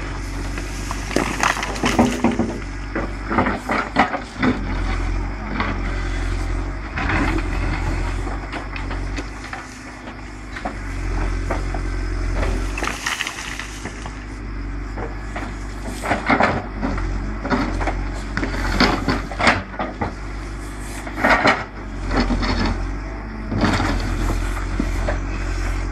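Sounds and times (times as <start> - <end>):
diesel engine running: 0.0 - 25.9
earth and stones scraping steel bucket: 0.6 - 2.6, 12.6 - 14.2.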